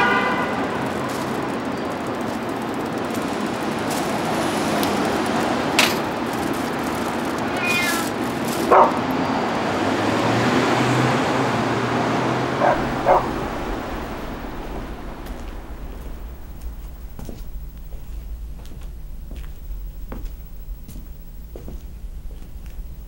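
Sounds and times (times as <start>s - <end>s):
steady background noise: 0.0s - 23.0s
short high-pitched calls: 7.4s - 8.2s.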